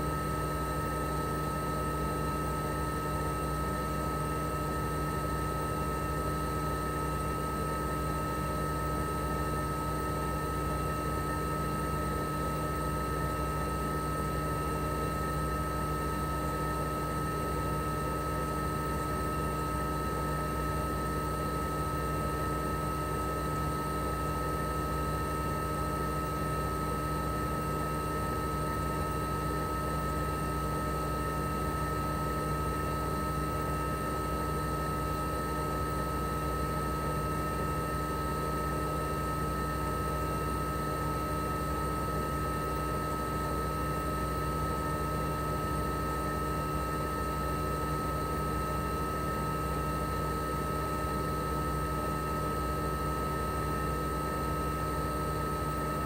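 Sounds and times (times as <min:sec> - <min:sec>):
air conditioner unit humming: 0:00.0 - 0:11.4.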